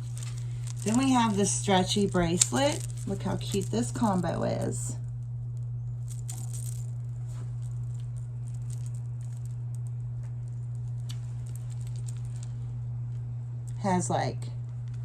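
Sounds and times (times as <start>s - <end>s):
bracelet beads rattling: 0.0s - 5.2s, 6.0s - 12.6s
steady low hum: 0.0s - 15.0s.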